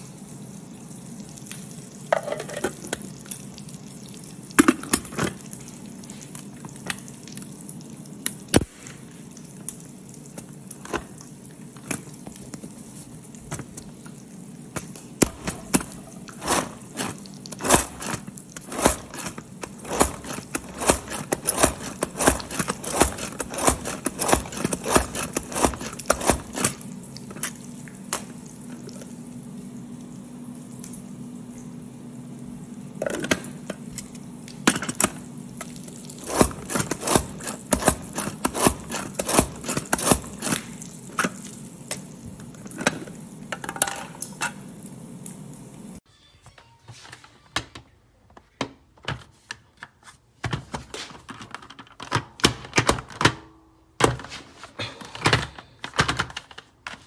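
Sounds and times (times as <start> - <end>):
knife chopping vegetables: 15.2 - 26.8, 36.2 - 40.6.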